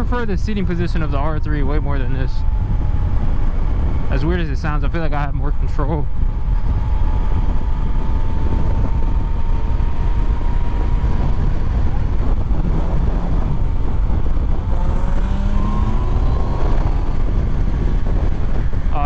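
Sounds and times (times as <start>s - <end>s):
wind rumble on microphone: 0.0s - 19.0s
motorcycle engine running: 6.1s - 19.0s.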